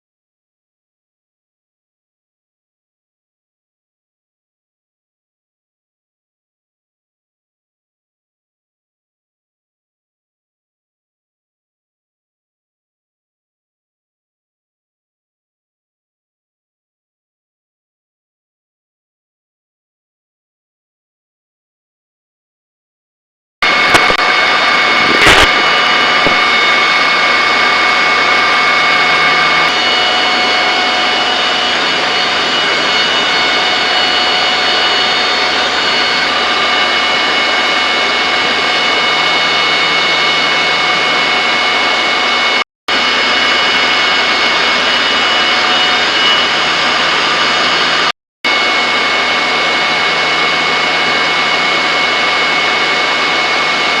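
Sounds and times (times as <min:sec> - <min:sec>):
high whining tones: 0:23.6 - 0:54.0
turbine engine noise: 0:23.6 - 0:54.0.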